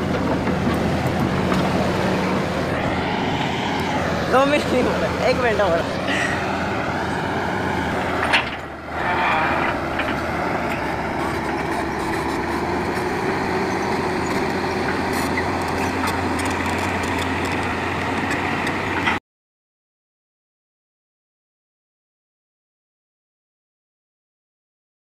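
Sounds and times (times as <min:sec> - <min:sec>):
heavy vehicle engine running: 0:00.0 - 0:19.2.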